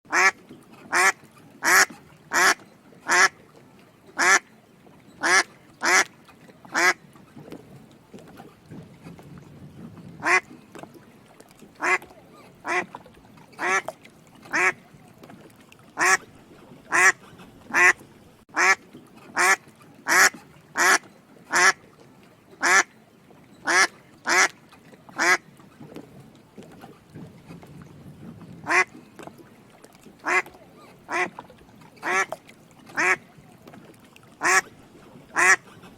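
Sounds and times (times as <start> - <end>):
duck quacking: 0.1 - 3.3, 4.2 - 4.4, 5.2 - 6.1, 6.7 - 7.0, 10.2 - 10.4, 11.8 - 12.0, 12.6 - 12.9, 13.6 - 13.9, 14.5 - 14.8, 16.0 - 16.2, 16.9 - 18.0, 18.6 - 18.8, 19.4 - 21.8, 22.6 - 22.9, 23.6 - 24.5, 25.2 - 25.4, 28.6 - 28.9, 30.2 - 30.5, 31.1 - 31.4, 32.0 - 32.3, 33.0 - 33.2, 34.4 - 34.7, 35.4 - 35.7.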